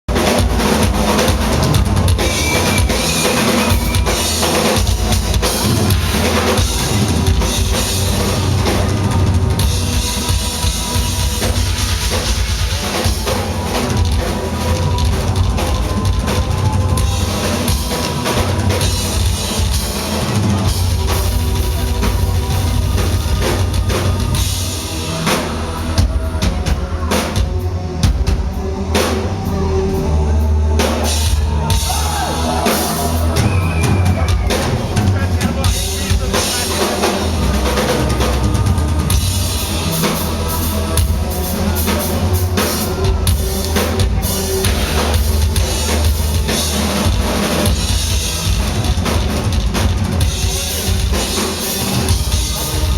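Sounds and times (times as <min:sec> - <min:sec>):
rock drum solo: 0:00.1 - 0:52.9.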